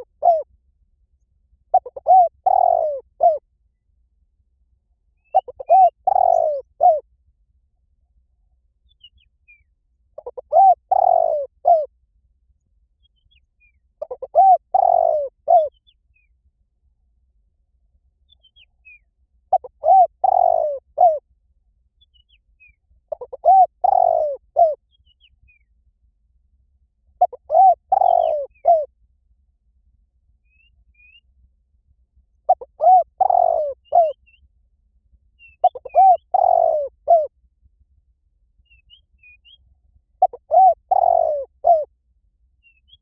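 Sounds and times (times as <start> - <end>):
dove cooing: 0.0 - 0.5, 1.7 - 3.4, 5.3 - 7.0, 10.2 - 11.9, 14.0 - 15.7, 19.5 - 21.2, 23.1 - 24.8, 27.2 - 28.9, 32.5 - 34.2, 35.6 - 37.3, 40.2 - 41.9.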